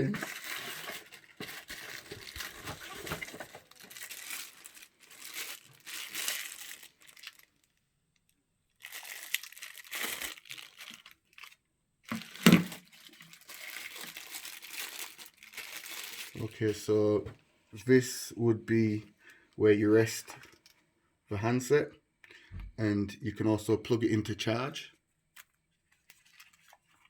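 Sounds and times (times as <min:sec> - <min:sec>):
plastic packaging crinkling: 0:00.0 - 0:17.0, 0:25.4 - 0:27.0.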